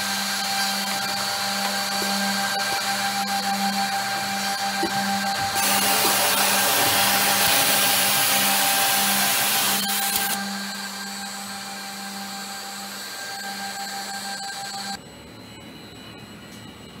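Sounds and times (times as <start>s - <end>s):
edge banding machine motors humming: 0.0s - 15.0s.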